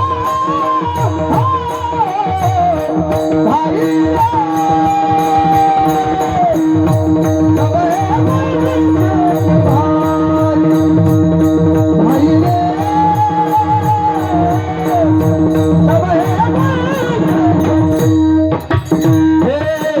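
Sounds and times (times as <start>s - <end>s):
person singing long notes: 0.0s - 11.2s, 11.9s - 18.2s
quick drum pattern: 0.0s - 20.0s
steady drone: 2.9s - 18.4s.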